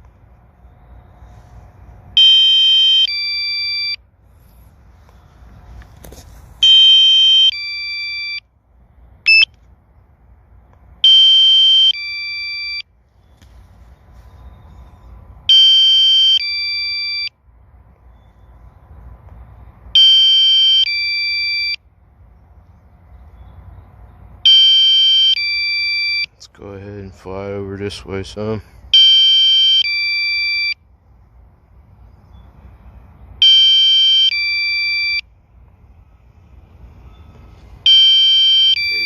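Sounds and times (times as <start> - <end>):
two-part electronic warning chime: 2.2 - 4.0, 6.6 - 8.4, 9.3 - 9.5, 33.4 - 35.2, 37.9 - 39.0.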